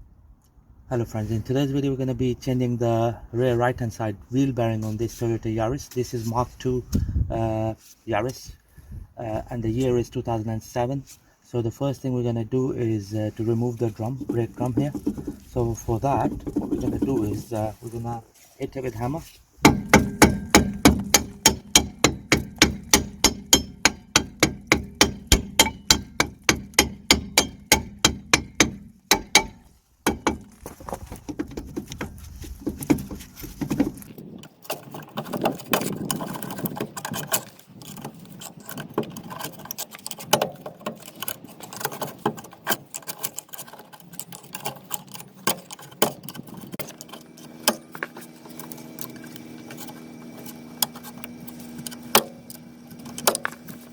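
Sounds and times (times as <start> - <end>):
steady low hum: 13.3 - 34.4, 44.4 - 53.9
hammer blows on brake drum: 19.6 - 30.5.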